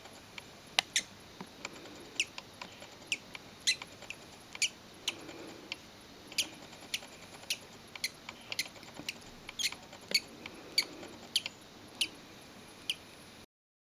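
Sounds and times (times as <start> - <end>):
chick peeping high cheeps: 3.1 - 5.2, 12.8 - 13.1.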